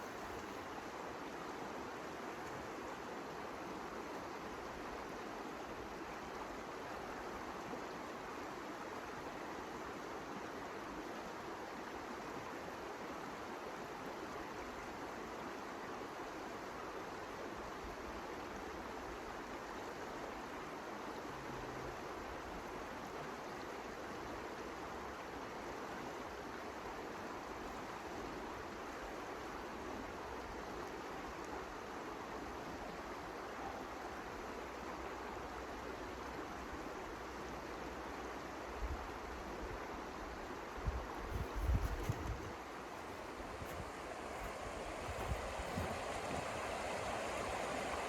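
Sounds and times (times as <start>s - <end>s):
blizzard wind rushing: 41.3s - 48.0s.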